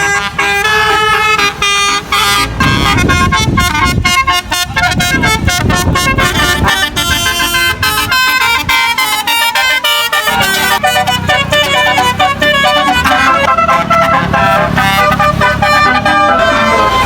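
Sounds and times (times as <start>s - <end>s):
bus engine rumble: 0.0s - 17.0s
musical bus horn melody: 0.0s - 17.0s
traffic: 0.0s - 17.0s.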